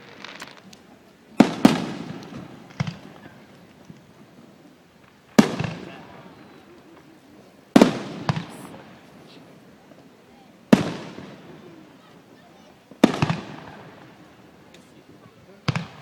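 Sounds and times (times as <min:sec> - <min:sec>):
fireworks booming: 0:00.0 - 0:16.0.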